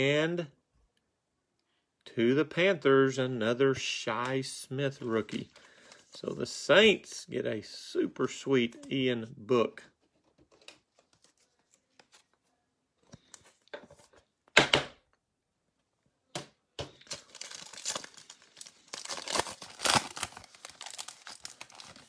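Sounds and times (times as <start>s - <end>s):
foil wrapper crinkling: 17.0s - 22.0s
foil pack ripping: 17.1s - 22.0s.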